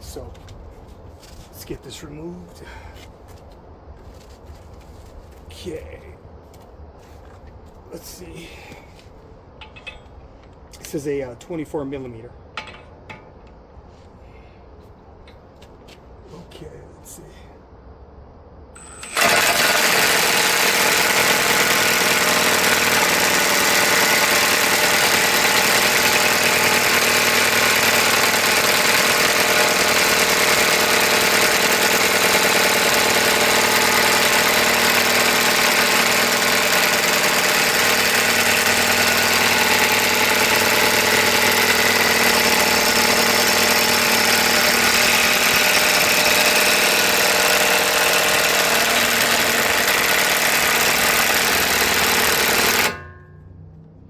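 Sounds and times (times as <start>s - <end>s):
impact wrench hammering: 18.8s - 53.3s.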